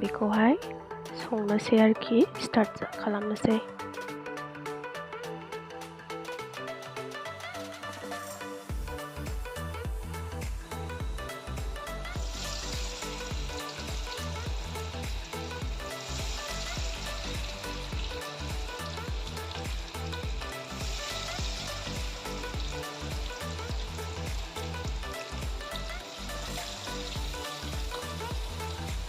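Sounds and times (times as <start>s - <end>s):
background music: 0.0s - 29.0s
chicken pieces sizzling: 11.2s - 29.0s.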